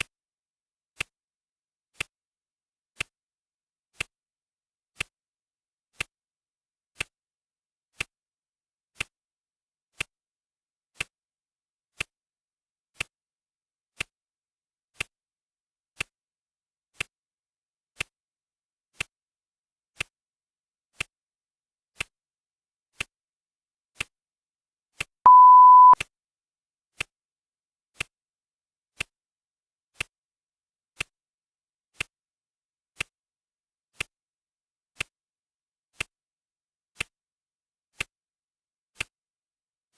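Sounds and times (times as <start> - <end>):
timer beep: 25.3 - 26.0.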